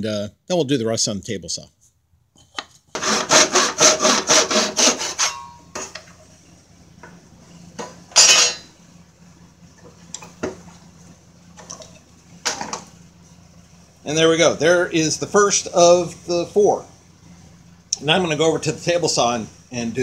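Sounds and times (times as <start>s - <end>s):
handsaw sawing wood: 2.9s - 5.5s
short rasping scrape: 3.0s - 5.6s.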